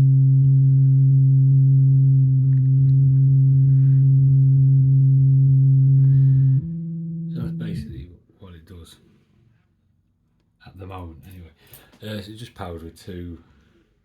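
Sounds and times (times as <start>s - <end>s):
low synth drone: 0.0s - 8.2s.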